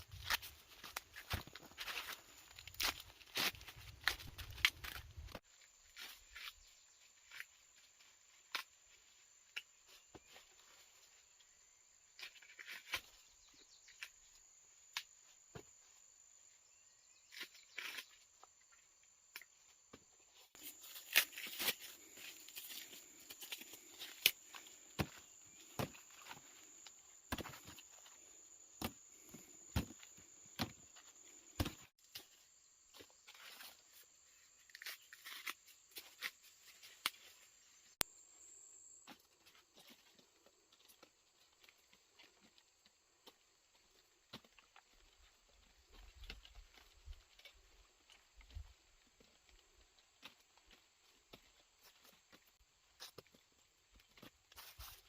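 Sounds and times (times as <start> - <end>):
rustles snaps and crunches: 0.0 - 10.8, 12.1 - 14.3, 17.3 - 18.4, 20.4 - 27.8, 33.3 - 38.1, 51.8 - 55.0.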